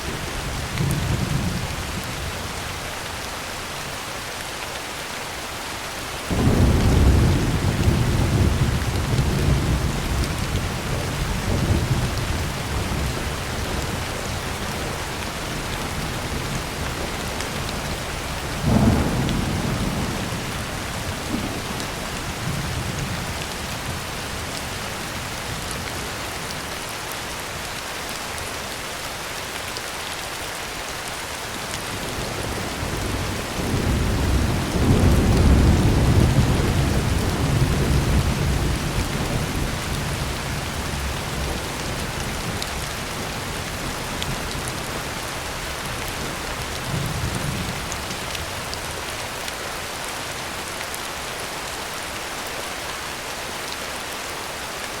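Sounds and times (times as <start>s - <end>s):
heavy rain on a tin roof: 0.0s - 55.0s
thunder rumbling: 6.3s - 25.8s, 31.9s - 48.5s.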